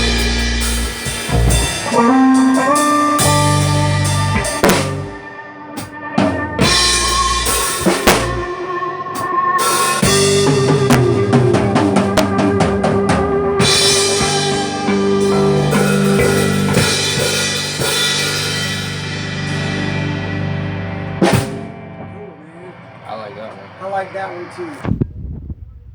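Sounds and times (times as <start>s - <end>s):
drum roll: 0.0s - 5.2s, 6.2s - 8.5s, 9.8s - 20.3s
small band playing: 0.0s - 24.9s.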